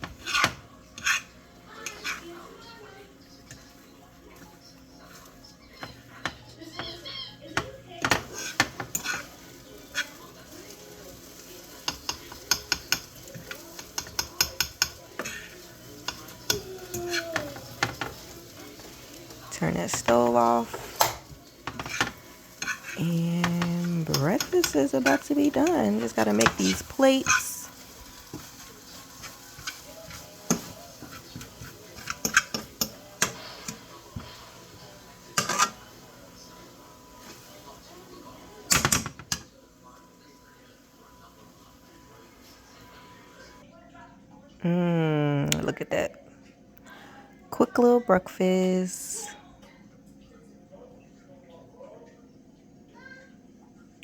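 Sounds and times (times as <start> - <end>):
utensil scraping a skillet: 0.0 - 2.4, 8.0 - 37.9
faint sizzle: 0.0 - 54.0.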